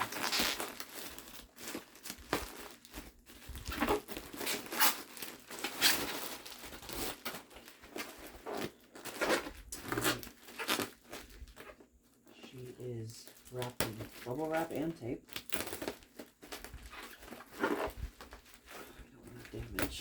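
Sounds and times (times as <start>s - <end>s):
bubble wrap and tape crinkling: 0.0s - 20.0s.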